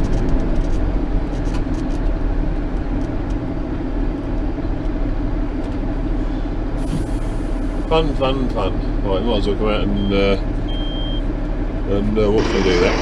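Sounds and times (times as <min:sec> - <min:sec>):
tractor diesel engine running: 0:11.3 - 0:13.0.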